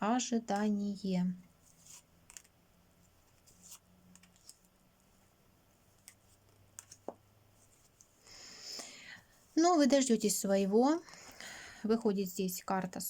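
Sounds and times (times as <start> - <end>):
faint clicks and taps: 3.3 - 5.1, 5.9 - 8.1.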